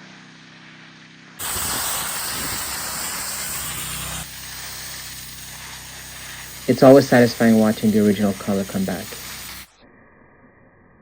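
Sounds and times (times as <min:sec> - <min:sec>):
high-pressure water jet hissing: 0:01.4 - 0:09.7
pressure washer engine running: 0:01.4 - 0:09.7.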